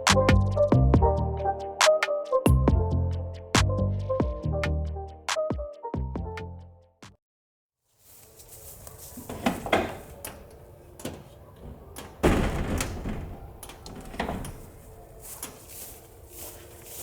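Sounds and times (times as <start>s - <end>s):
aluminum door clunking and rattling: 9.2s - 15.6s.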